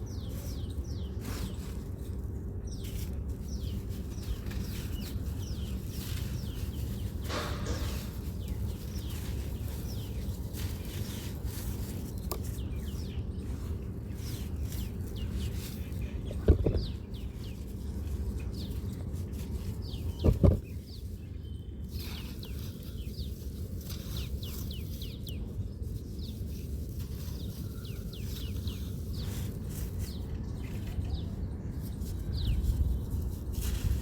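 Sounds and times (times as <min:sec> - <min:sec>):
small birds chirping: 0:00.0 - 0:34.0.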